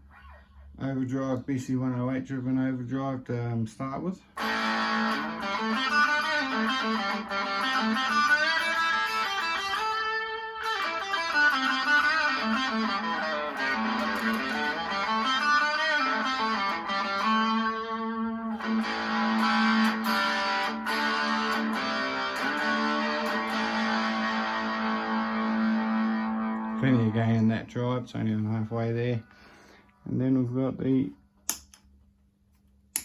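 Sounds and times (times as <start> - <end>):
overdriven electric guitar: 4.4 - 27.5.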